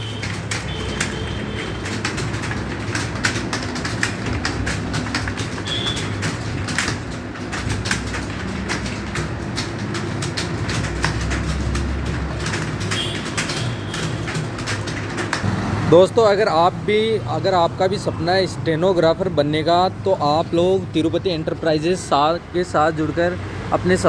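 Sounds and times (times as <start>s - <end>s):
people typing on keyboards: 0.0s - 24.0s.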